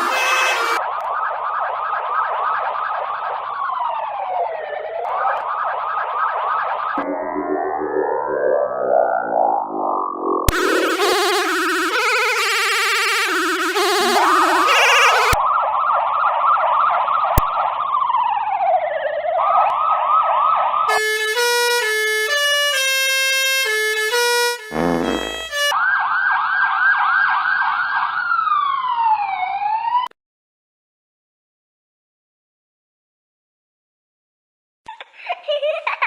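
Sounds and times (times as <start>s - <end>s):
stepped horn-like notes: 0.0s - 0.8s, 10.5s - 15.4s, 20.9s - 25.7s
police siren yelp: 0.0s - 30.1s
slow falling siren tone: 0.0s - 30.1s.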